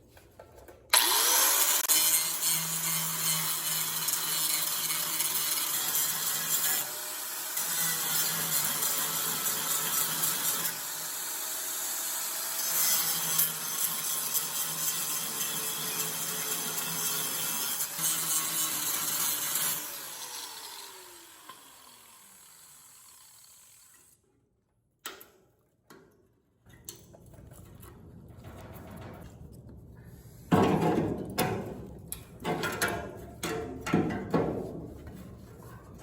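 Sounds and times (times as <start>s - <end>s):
power tool cutting sheet steel: 0.9s - 24.2s.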